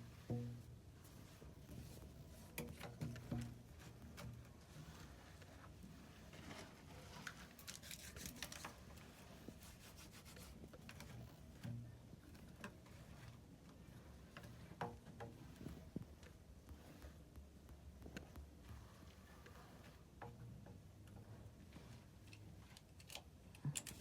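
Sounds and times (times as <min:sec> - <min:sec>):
small parts rubbing and scraping: 0:04.7 - 0:11.2.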